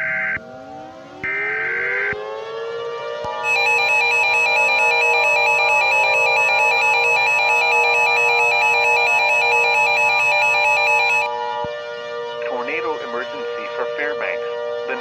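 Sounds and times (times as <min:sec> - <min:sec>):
synthesized musical chord: 0:03.2 - 0:15.0
warbling electronic alert tone: 0:03.3 - 0:11.3.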